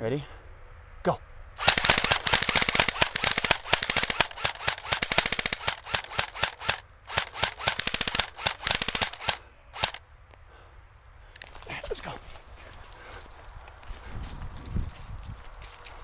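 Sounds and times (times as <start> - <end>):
automatic gunfire: 1.6 - 10.0.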